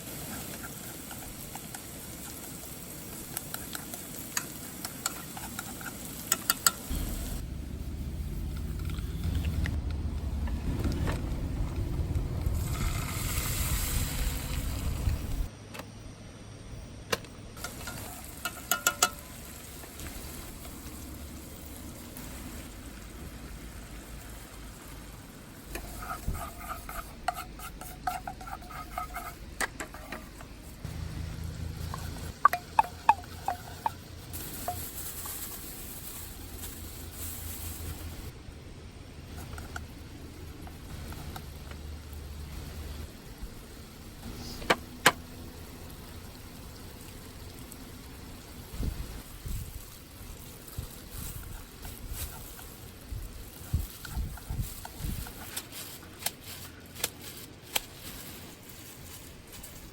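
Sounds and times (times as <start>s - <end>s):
food sizzling: 0.0s - 15.5s, 17.6s - 38.4s, 39.3s - 59.9s
utensils clicking and knocking: 17.6s - 19.2s.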